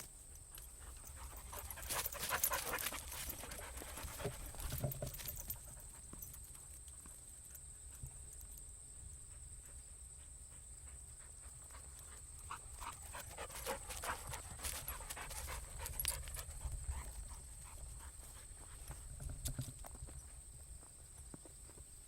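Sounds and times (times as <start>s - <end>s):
dog panting: 0.7s - 6.1s, 9.3s - 19.0s.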